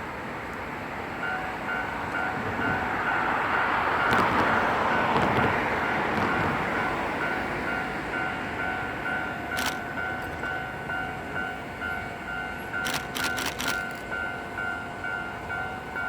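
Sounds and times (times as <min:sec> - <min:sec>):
sharp clicks: 0:09.6 - 0:10.4, 0:12.8 - 0:14.1.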